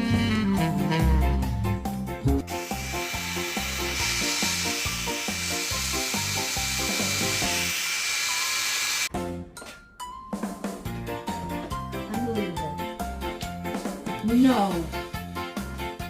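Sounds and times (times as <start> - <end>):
music with walking bass line: 0.0 - 2.5
steady hissing noise: 2.5 - 9.1.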